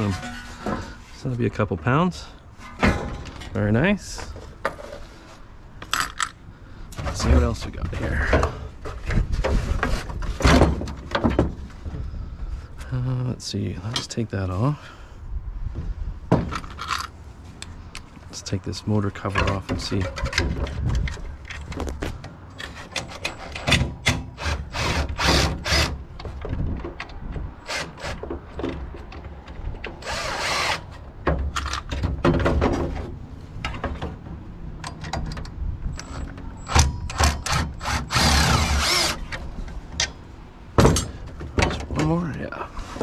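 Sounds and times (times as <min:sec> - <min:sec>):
metal parts clattering: 0:05.8 - 0:06.4, 0:16.5 - 0:17.2
power drill running in bursts: 0:37.8 - 0:39.2.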